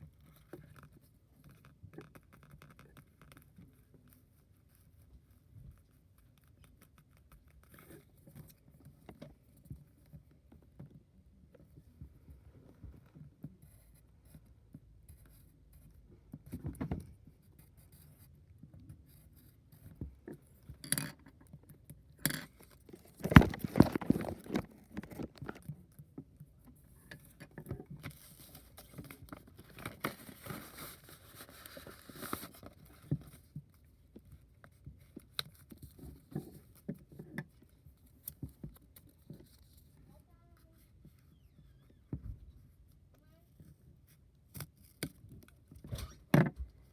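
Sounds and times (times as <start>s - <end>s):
box handling knocks and scrapes: 22.8s - 25.7s
papery rustling: 22.9s - 25.7s.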